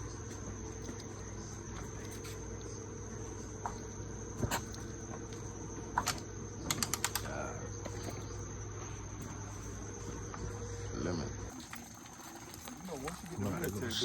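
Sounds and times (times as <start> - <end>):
crickets chirping: 0.0 - 14.0
sharp clicks: 6.0 - 7.4.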